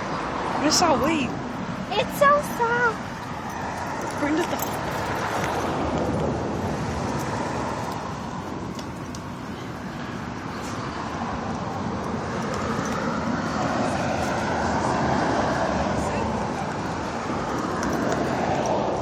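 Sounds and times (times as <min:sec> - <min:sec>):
passing road traffic: 0:00.0 - 0:19.0.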